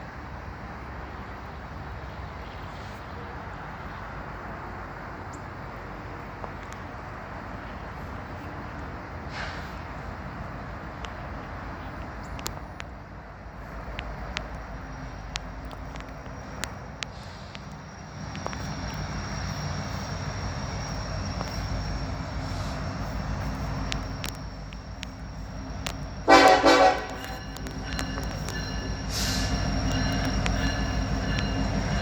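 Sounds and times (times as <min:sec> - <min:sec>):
loud vehicle horn blast: 0:26.3 - 0:27.2.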